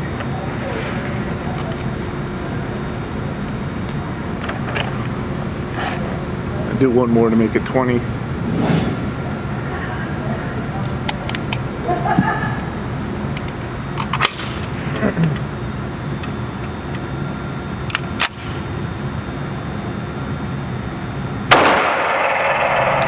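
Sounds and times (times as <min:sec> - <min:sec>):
steady rushing noise: 0:08.1 - 0:10.2
distant gunshots: 0:21.5 - 0:22.5
pistol gunshots: 0:21.5 - 0:23.0.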